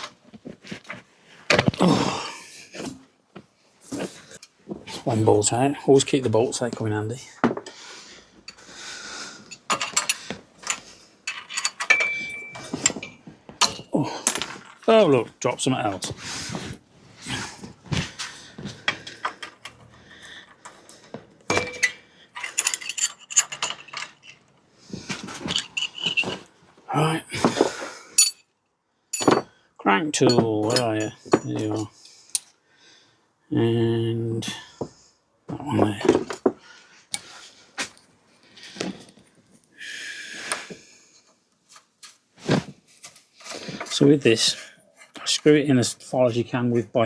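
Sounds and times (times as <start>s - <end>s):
metal tools clinking: 9.4s - 14.9s, 18.8s - 24.6s, 25.2s - 26.5s, 28.2s - 28.5s, 29.1s - 32.5s
metal tool clinks: 9.5s - 13.9s, 21.5s - 24.1s
ringing metal clank: 11.7s - 13.8s, 21.5s - 22.0s.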